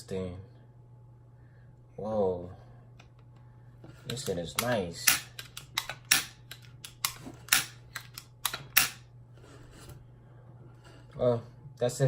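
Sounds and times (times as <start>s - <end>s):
quiet handling noises: 2.9s - 5.7s.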